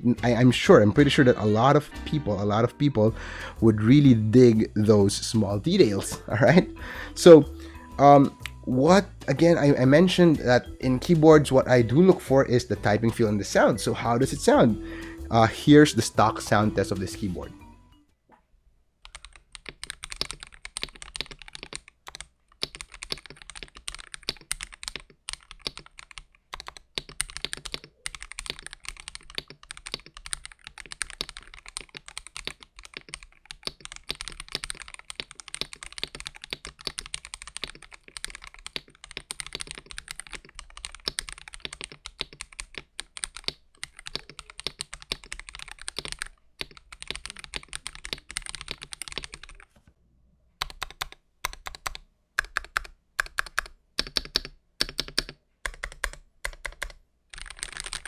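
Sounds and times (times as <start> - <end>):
mechanical keyboard typing: 19.0 - 49.7, 50.6 - 58.0.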